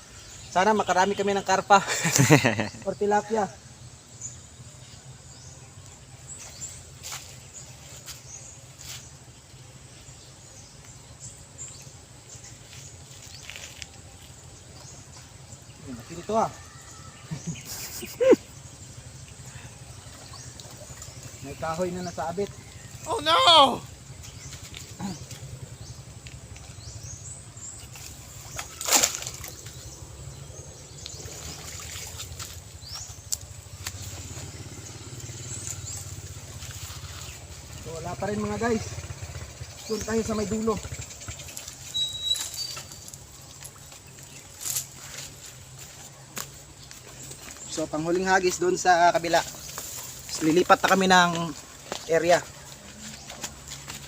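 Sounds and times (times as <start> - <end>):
low river rumble: 16.5 - 42.0
water sloshing and trickling: 18.9 - 23.0, 27.7 - 30.3, 30.9 - 34.2, 40.9 - 46.1
high bird chirps: 38.9 - 43.1.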